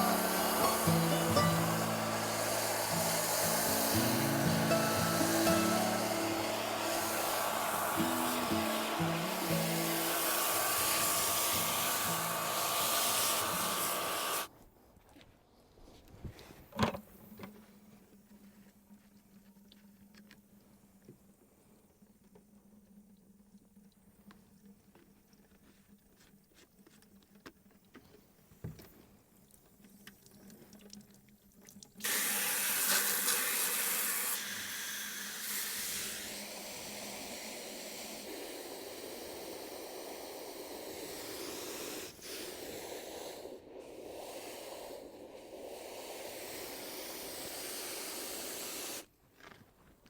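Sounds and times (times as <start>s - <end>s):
hissing spray: 0.0s - 14.5s, 32.0s - 49.1s.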